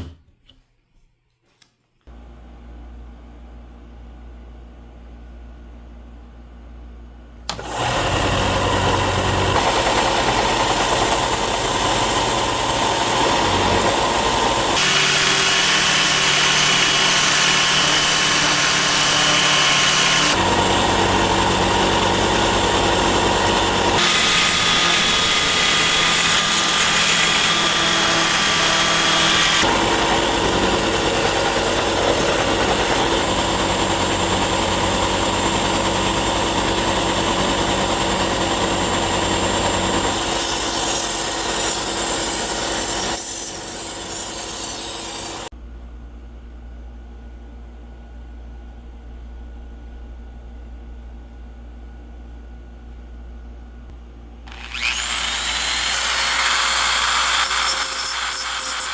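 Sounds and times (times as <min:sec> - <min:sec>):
power tool running: 0:07.5 - 0:45.5, 0:54.5 - 0:58.9.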